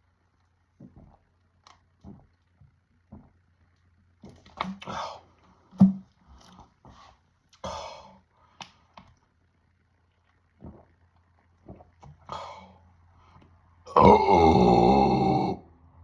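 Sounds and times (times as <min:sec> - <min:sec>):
hard breaths out: 0:12.2 - 0:12.8
person swallowing: 0:13.9 - 0:15.6.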